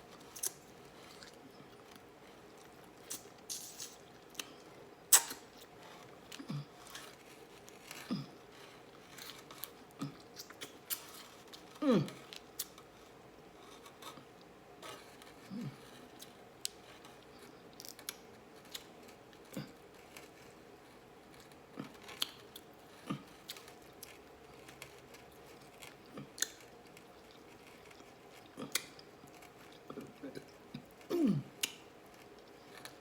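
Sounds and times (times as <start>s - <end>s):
lip smacks: 5.1s - 5.6s
chewing: 14.9s - 33.0s.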